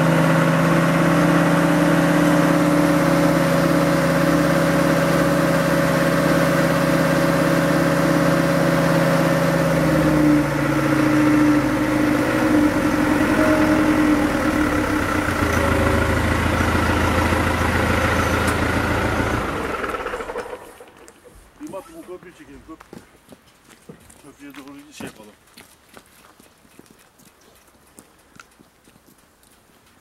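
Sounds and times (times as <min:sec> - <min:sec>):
engine idling: 0:00.0 - 0:21.2.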